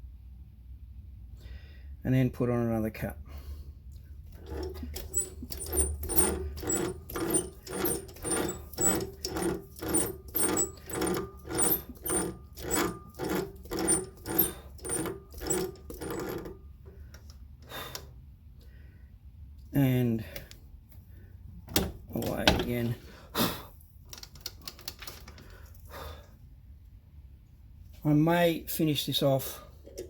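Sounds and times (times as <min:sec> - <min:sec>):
lathe tool rhythmic rasping: 0:04.4 - 0:16.6.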